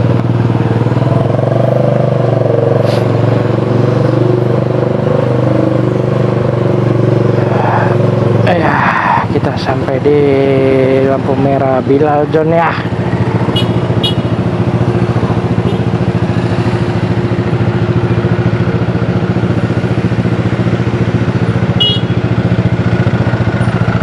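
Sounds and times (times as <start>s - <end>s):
motorcycle engine idling: 9.6s - 24.0s.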